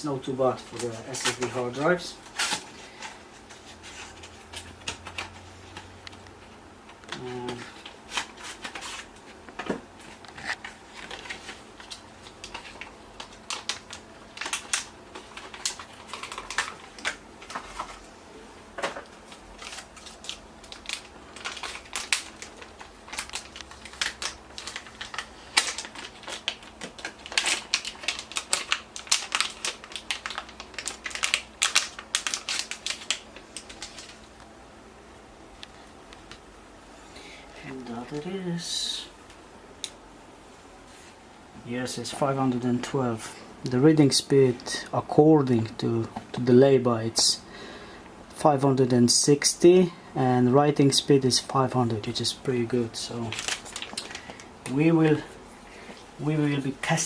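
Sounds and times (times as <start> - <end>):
packaging crinkling and clicking: 0.7 - 6.3, 6.9 - 18.1, 18.8 - 34.5, 53.0 - 56.0.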